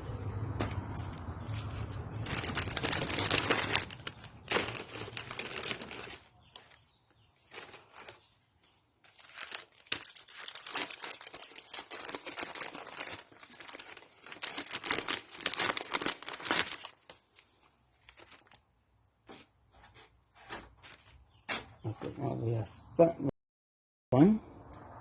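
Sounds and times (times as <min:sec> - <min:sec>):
packaging crinkling and tearing: 0:01.0 - 0:06.8, 0:07.4 - 0:08.4, 0:09.0 - 0:18.7.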